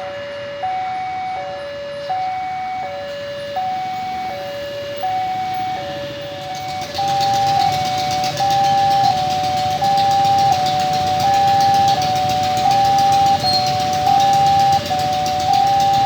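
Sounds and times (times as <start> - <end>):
two-tone level crossing siren: 0.0 - 16.0.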